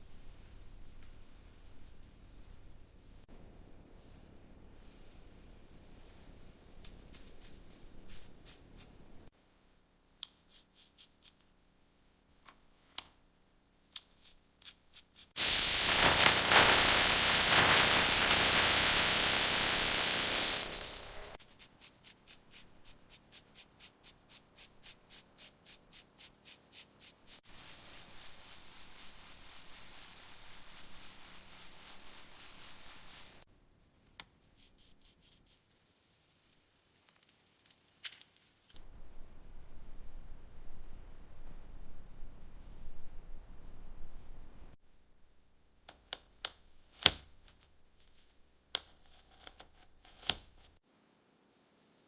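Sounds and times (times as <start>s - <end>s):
faint background hiss: 0.0s - 52.0s
paint spray hiss: 15.4s - 22.4s, 26.7s - 33.5s.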